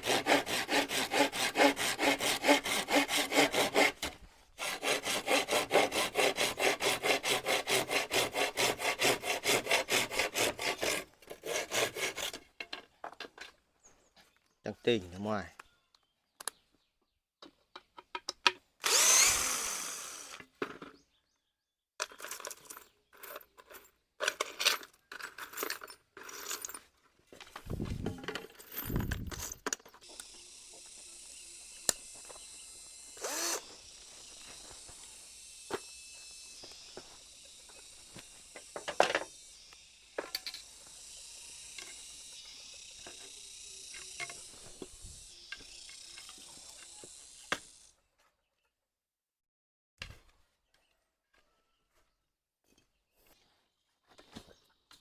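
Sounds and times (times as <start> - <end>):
power drill drilling wood: 18.8 - 20.5, 30.1 - 39.9.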